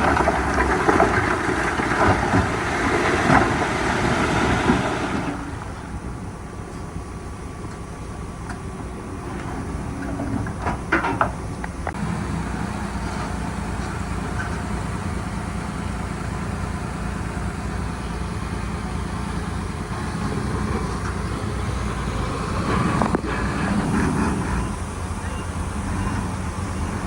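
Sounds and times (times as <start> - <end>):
diesel engine running: 0.0 - 27.0
engine clatter: 0.0 - 27.0.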